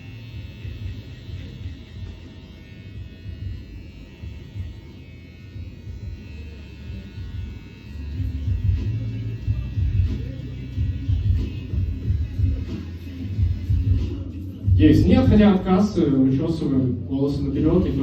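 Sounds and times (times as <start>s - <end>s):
electric hair clipper running: 0.0s - 15.9s, 17.5s - 18.0s
background music: 5.9s - 18.0s.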